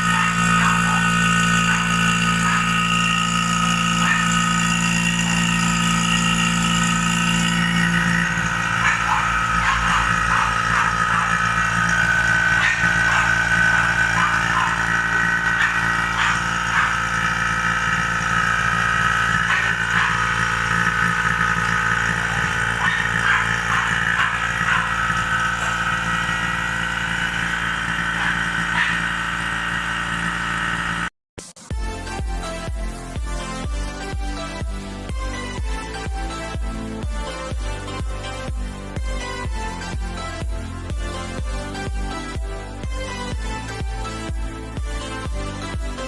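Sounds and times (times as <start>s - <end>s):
vacuum pump motor hum: 0.0s - 31.2s.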